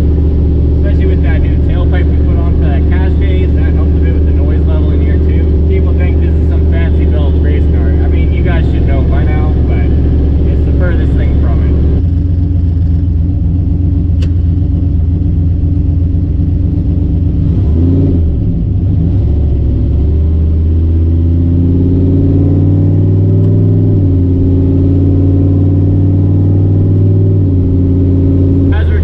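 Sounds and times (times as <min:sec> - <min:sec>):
car engine from inside cabin: 0:00.0 - 0:29.0.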